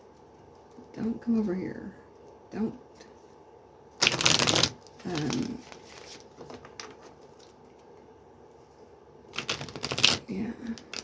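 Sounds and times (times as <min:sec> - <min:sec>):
cards riffle shuffling: 0:04.0 - 0:07.5, 0:09.3 - 0:10.2
card handling: 0:04.0 - 0:08.0, 0:09.3 - 0:10.2.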